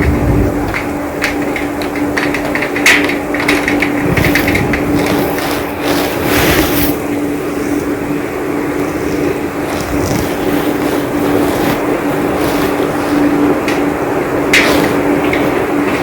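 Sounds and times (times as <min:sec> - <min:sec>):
raindrops ticking on hard surface: 0:00.0 - 0:06.3, 0:09.5 - 0:16.0.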